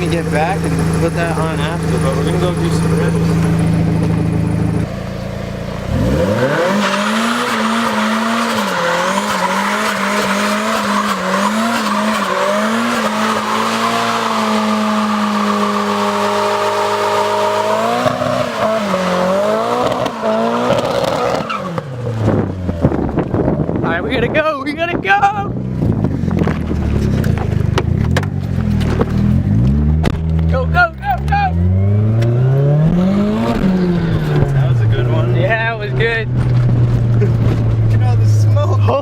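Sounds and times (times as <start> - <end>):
car engine revving: 0.0 - 24.3, 25.5 - 39.0
tyre squeal: 6.7 - 22.2.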